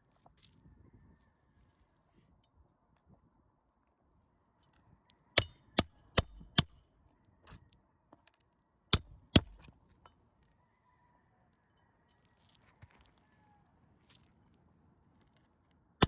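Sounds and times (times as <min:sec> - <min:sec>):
hammer striking nails: 0:05.4 - 0:06.7, 0:09.0 - 0:09.7.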